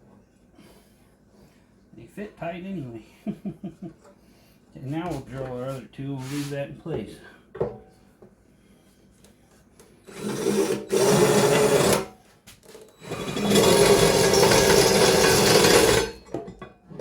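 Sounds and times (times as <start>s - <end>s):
power drill boring through metal: 10.1s - 12.1s, 12.9s - 16.3s.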